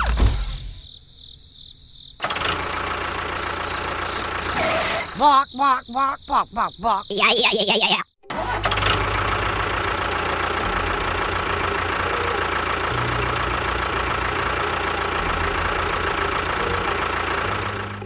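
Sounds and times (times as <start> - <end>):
engine running with low pulsing: 2.2 - 4.8, 8.3 - 18.0.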